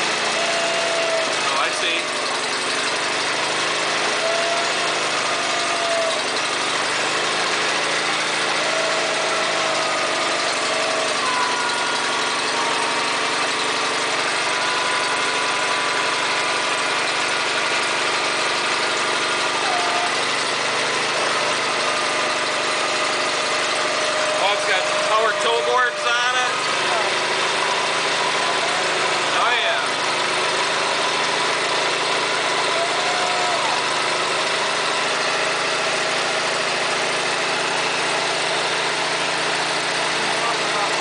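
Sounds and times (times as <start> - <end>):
sawmill gas engine running: 0.0 - 41.0
short whining tones: 4.0 - 31.2.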